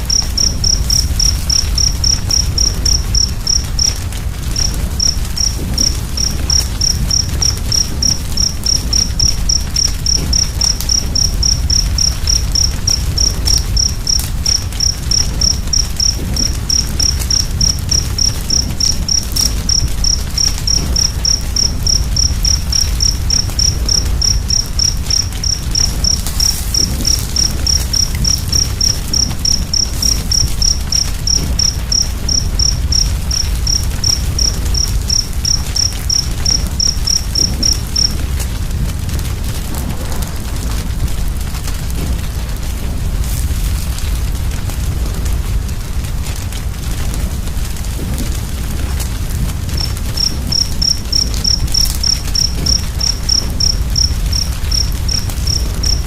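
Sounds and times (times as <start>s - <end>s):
cricket chirping: 0.0s - 46.3s, 47.0s - 56.0s
wood fire crackling: 0.0s - 56.0s.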